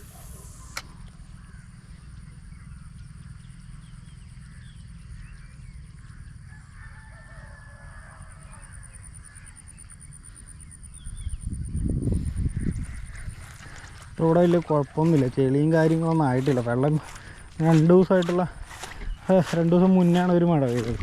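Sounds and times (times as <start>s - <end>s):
steady low rumble: 0.0s - 6.8s, 8.8s - 21.0s
faint bird calls: 0.0s - 21.0s.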